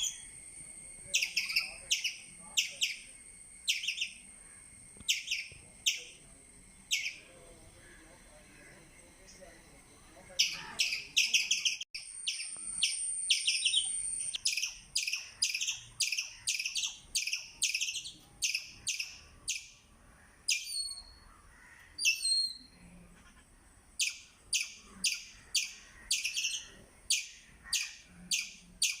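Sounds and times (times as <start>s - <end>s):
squirrel chirping: 0.0s - 0.4s, 1.0s - 4.3s, 5.0s - 6.2s, 6.8s - 7.4s, 10.3s - 19.8s, 20.5s - 21.2s, 24.0s - 29.0s.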